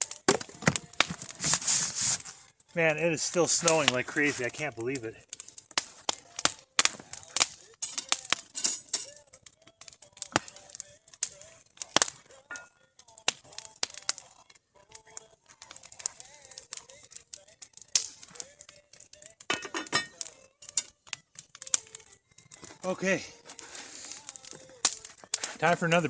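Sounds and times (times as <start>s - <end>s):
campfire crackling and popping: 0.0s - 26.0s.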